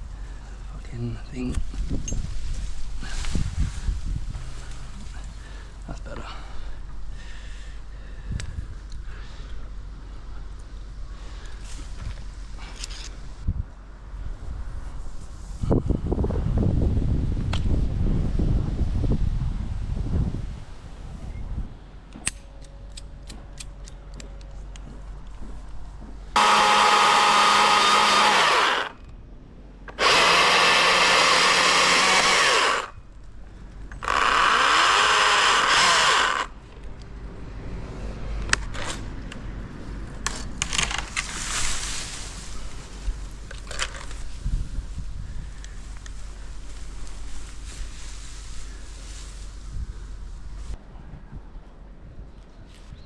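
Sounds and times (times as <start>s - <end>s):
chainsaw at full throttle: 26.4s - 29.0s, 29.9s - 32.9s, 34.0s - 36.6s
rustling: 40.2s - 50.8s.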